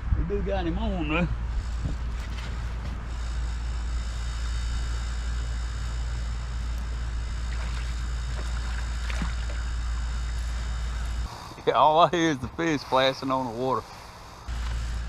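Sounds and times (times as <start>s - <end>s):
wind rumbling on microphone: 0.0s - 6.0s
water against a boat: 1.4s - 15.0s.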